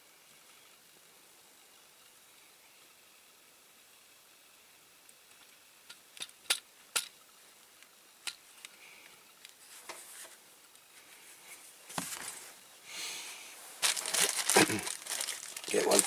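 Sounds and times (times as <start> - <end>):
handling small parts and tools: 13.8 - 16.0.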